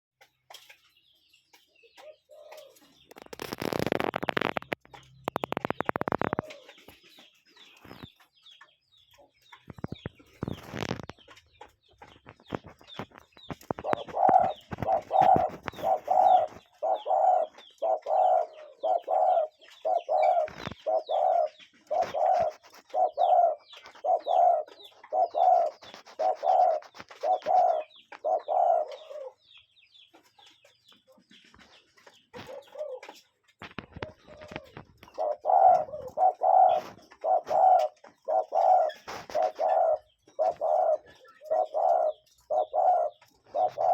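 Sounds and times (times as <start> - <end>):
small birds chirping: 0.2 - 43.9
cuckoo calling: 2.0 - 8.2, 13.0 - 29.4, 32.3 - 33.2, 33.9 - 43.9.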